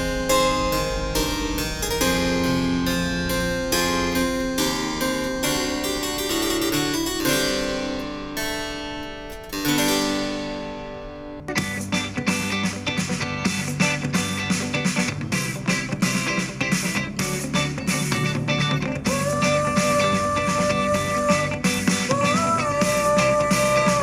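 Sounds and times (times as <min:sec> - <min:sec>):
harpsichord music through speaker: 0:00.0 - 0:22.1
guitar-led music: 0:00.0 - 0:24.0.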